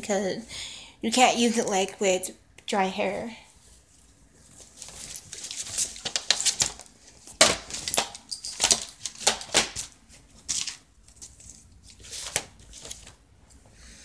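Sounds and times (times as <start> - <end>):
hands rummaging through bag: 4.4 - 13.2.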